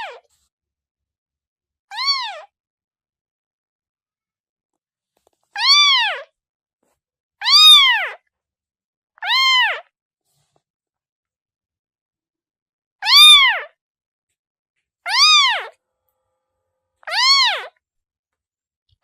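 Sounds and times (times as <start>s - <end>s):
kitten meowing: 1.9s - 2.5s, 5.6s - 6.3s, 7.4s - 8.2s, 9.2s - 9.9s, 13.0s - 13.7s, 15.1s - 15.8s, 17.1s - 17.7s.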